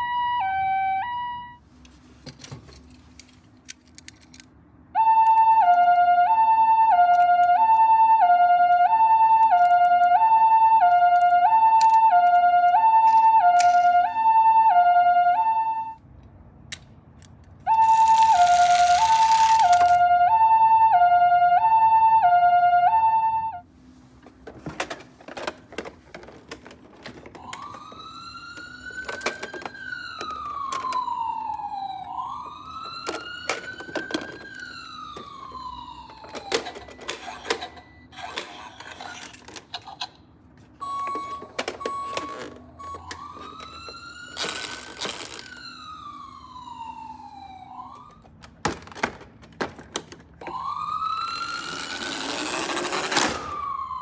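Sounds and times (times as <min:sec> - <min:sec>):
toy siren wailing: 0:00.0 - 0:01.6, 0:05.0 - 0:16.0, 0:17.7 - 0:23.6, 0:26.6 - 0:48.7, 0:50.2 - 0:54.0
two-tone hi-lo siren: 0:00.0 - 0:01.7, 0:04.9 - 0:16.0, 0:17.6 - 0:23.8, 0:27.1 - 0:39.3, 0:40.7 - 0:48.6, 0:50.3 - 0:54.0
toy cars clicking and clattering: 0:02.3 - 0:04.6, 0:11.0 - 0:14.1, 0:16.7 - 0:20.1, 0:24.8 - 0:40.2, 0:40.8 - 0:46.2, 0:48.5 - 0:53.9.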